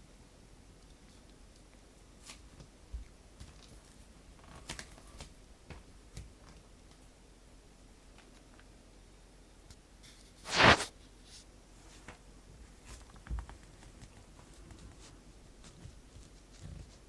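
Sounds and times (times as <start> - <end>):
faint clicks and taps: 0.8 - 7.1, 12.0 - 17.0.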